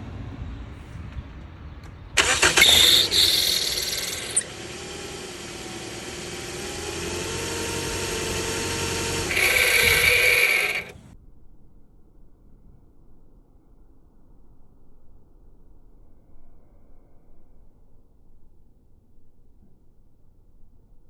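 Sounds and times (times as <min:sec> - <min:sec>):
car grinding: 0:02.2 - 0:11.1.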